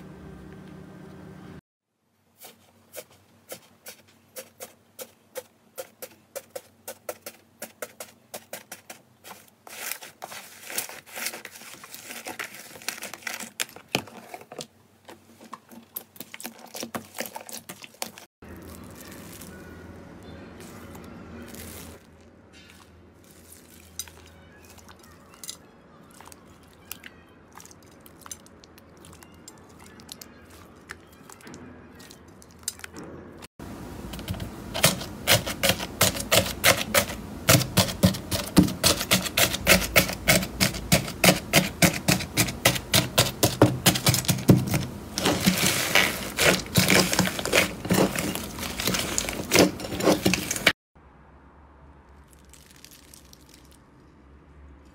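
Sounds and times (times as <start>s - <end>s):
slime crackling and popping: 52.3s - 53.8s.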